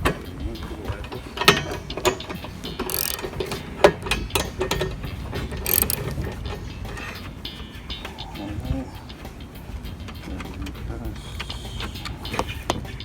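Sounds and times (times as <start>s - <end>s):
metal tools clinking: 1.0s - 8.0s
ratchet wrench clicking: 1.4s - 6.7s.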